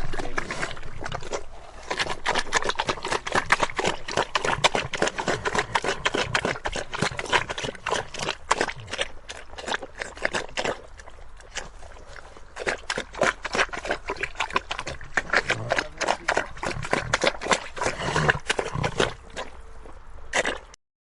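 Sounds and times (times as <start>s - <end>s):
pig grunting: 0.0s - 20.7s
pig chewing and slurping: 0.0s - 20.8s.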